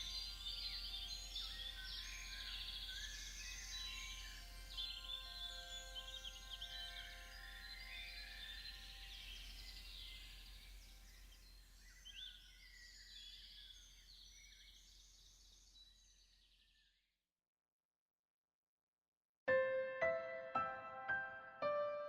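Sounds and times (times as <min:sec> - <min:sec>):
songbirds chirping and trilling: 0:00.0 - 0:16.9.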